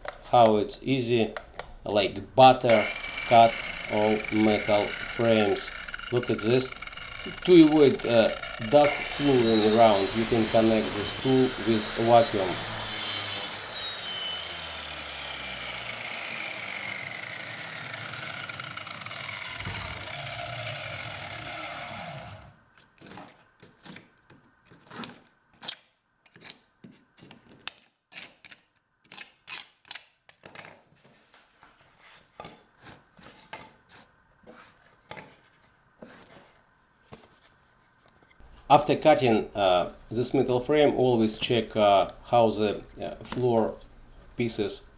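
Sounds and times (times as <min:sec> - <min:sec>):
saw whine against metal: 0:02.6 - 0:22.5.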